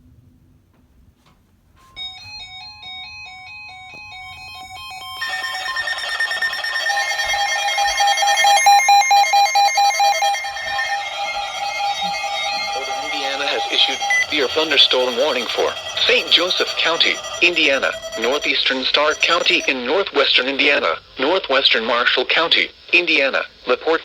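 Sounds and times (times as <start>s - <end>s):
overlapping warbling alarms: 4.3s - 19.7s
weather radio alert tone: 5.2s - 19.8s.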